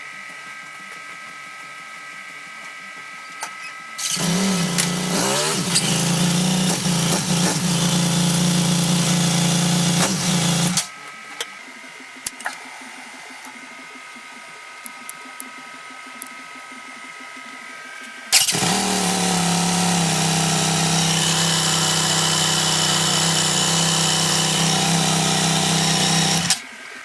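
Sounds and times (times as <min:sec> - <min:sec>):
motorcycle engine starting and idling: 0:04.0 - 0:10.9, 0:18.4 - 0:26.7.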